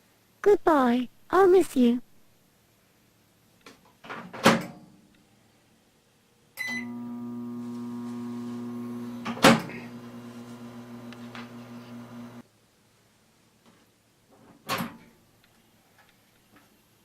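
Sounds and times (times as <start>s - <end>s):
microwave electrical hum: 6.6s - 12.4s.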